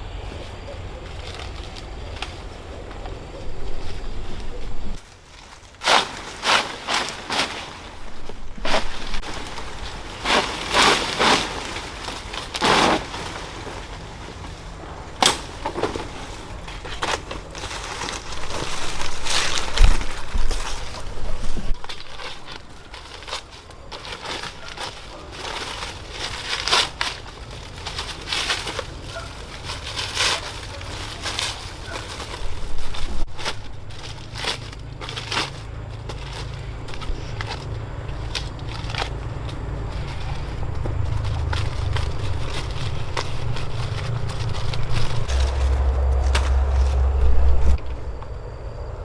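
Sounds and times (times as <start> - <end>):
dull low thud: 43.0 - 49.0.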